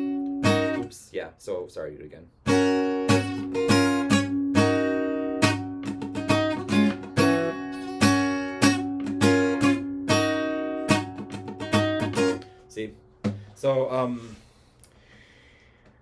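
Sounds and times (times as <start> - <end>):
acoustic guitar strumming: 0.0 - 1.0, 2.4 - 13.6.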